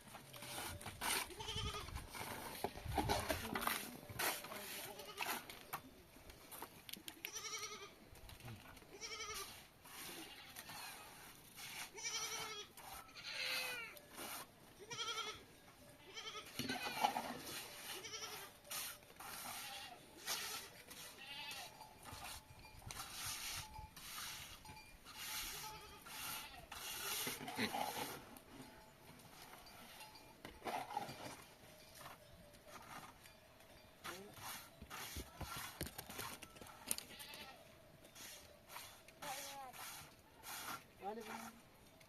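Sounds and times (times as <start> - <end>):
goats bleating: 1.3 - 1.9, 7.2 - 8.0, 8.9 - 10.7, 11.9 - 14.0, 14.8 - 15.4, 16.0 - 18.5, 19.4 - 21.8, 37.0 - 37.6.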